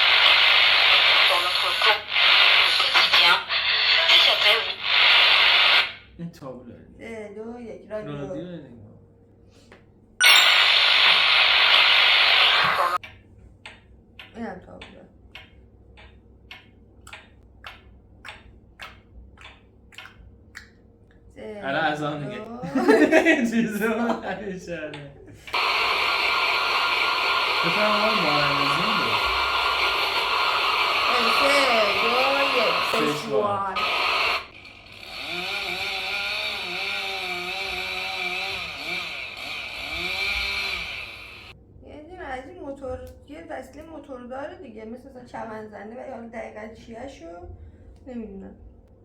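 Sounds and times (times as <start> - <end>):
rhythmic hissing tick: 24.0 - 35.0
small engine revving: 34.3 - 41.5.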